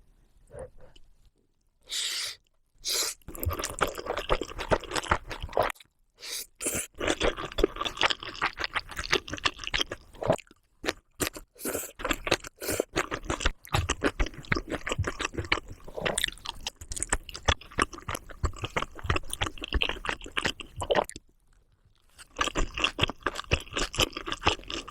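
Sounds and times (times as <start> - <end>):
crunchy chewing of food: 3.2 - 24.9.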